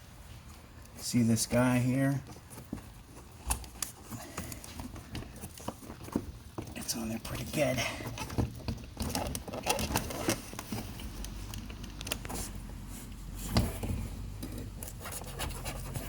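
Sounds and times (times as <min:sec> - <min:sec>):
plastic connector clicking and rattling: 0:08.1 - 0:12.3.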